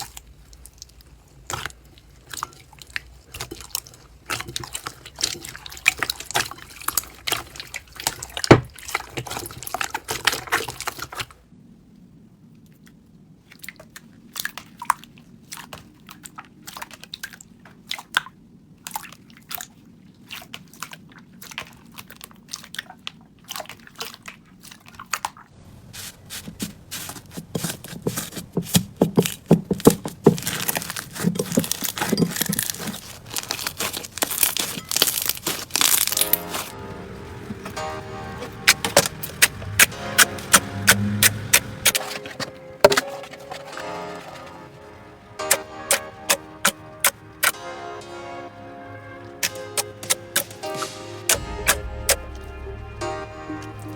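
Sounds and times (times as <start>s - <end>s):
slime squished by hand: 26.0s - 36.8s.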